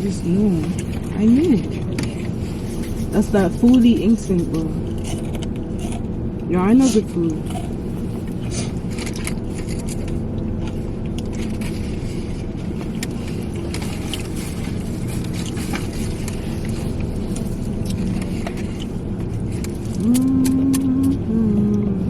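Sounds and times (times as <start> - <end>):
vehicle engine running: 0.0 - 22.0
small clicks and rustles: 11.1 - 20.2.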